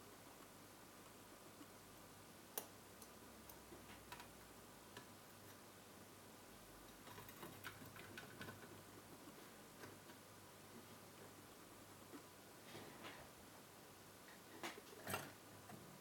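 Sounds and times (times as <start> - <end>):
small parts clicking and tapping: 2.6 - 5.6, 6.8 - 8.8.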